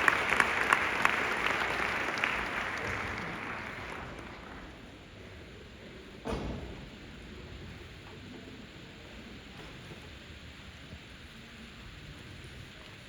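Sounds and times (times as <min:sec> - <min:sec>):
audience applause: 0:00.0 - 0:05.0.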